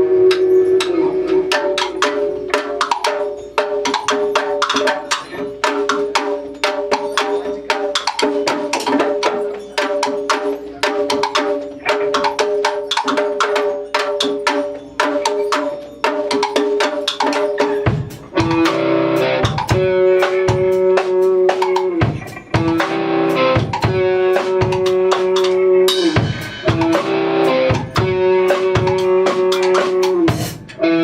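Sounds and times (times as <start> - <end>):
sustained tones: 0.0 - 4.5
fast sharp pitched notes: 0.0 - 31.0.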